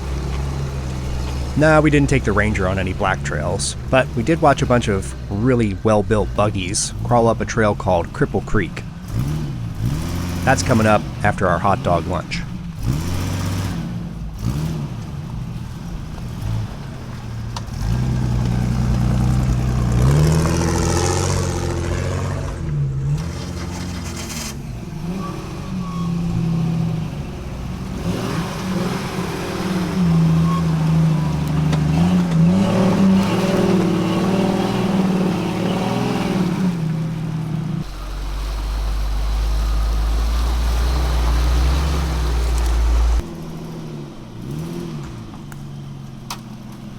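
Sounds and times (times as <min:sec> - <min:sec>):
low engine drone: 0:00.0 - 0:13.2, 0:28.8 - 0:44.4
off-road vehicle engines revving: 0:00.0 - 0:46.9.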